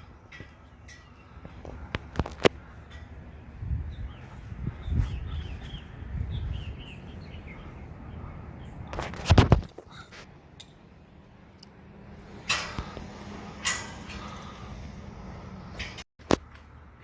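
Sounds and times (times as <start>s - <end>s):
small birds chirping: 0.0s - 9.2s.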